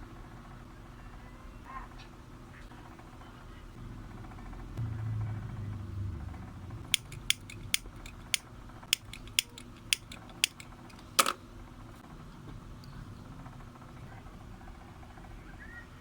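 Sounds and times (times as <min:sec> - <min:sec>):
hand tools clicking: 0:06.8 - 0:11.0
loud click with ring: 0:06.9 - 0:10.7.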